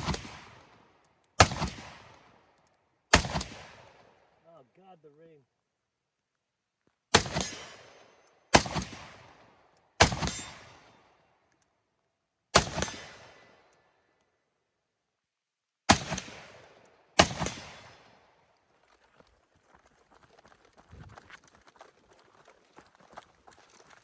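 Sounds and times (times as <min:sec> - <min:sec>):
rifle shots with echo: 0:00.0 - 0:02.5, 0:03.1 - 0:04.3, 0:07.1 - 0:11.2, 0:12.5 - 0:13.7, 0:15.9 - 0:18.4.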